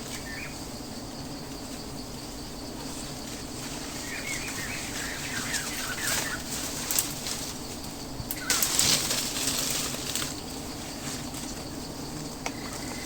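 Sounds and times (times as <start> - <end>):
rustling: 2.8 - 13.0
bird chirping: 4.0 - 6.5.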